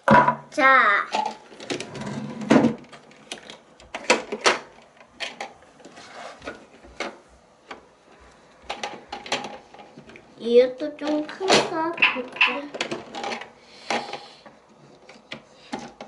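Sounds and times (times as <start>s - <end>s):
plastic toys clicking and knocking: 1.0s - 1.9s, 2.5s - 7.8s, 8.6s - 16.0s.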